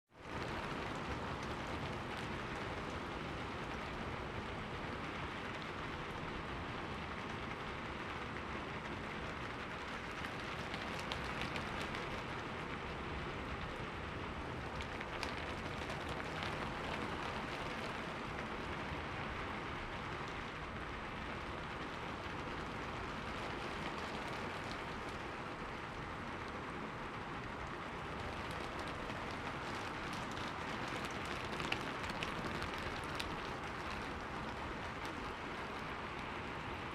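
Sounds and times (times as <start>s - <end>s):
rain falling: 0.1s - 36.9s
raindrop splashes: 0.2s - 36.9s.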